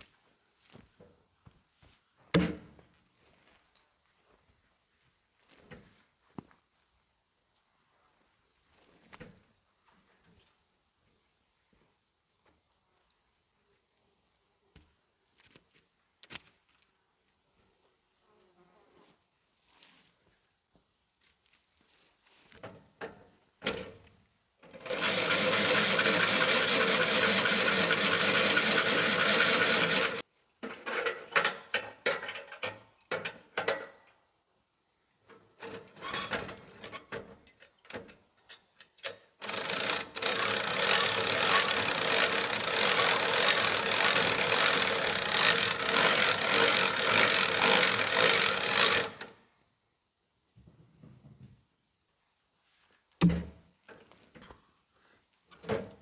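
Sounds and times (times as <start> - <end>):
bandsaw sawmill running: 24.7 - 30.2, 35.7 - 37.0, 39.4 - 49.3.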